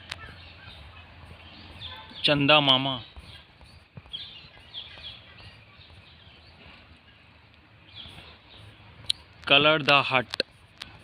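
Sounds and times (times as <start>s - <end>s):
faint bird chirps: 0.0s - 9.3s.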